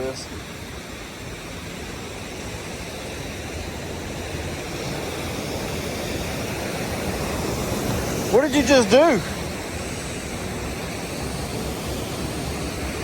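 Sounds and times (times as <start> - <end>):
waterfall roaring: 0.0 - 13.0.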